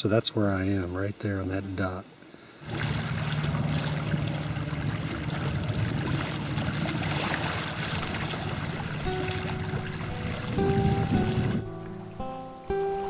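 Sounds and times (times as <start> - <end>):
water rushing and splashing: 2.6 - 13.0.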